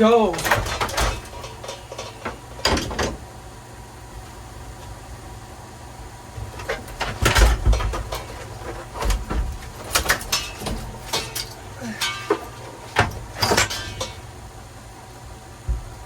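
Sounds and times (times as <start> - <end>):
low steady hum: 0.0 - 16.0
knocks and clunks: 0.3 - 3.3, 6.4 - 14.3, 15.6 - 16.0.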